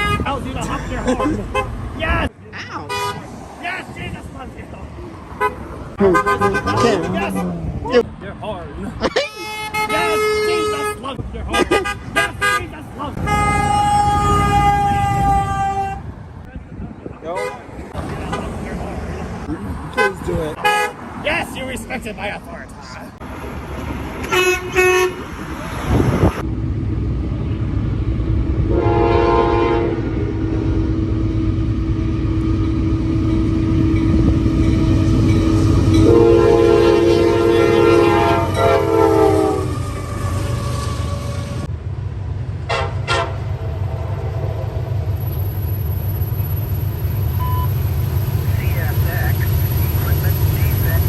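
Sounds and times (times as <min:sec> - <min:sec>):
low rumble of passing train: 0:02.9 - 0:06.6, 0:09.5 - 0:51.0
train air horn blasts: 0:09.3 - 0:11.0, 0:11.6 - 0:16.0, 0:24.3 - 0:25.3, 0:28.7 - 0:31.7, 0:32.3 - 0:41.7, 0:42.7 - 0:43.5.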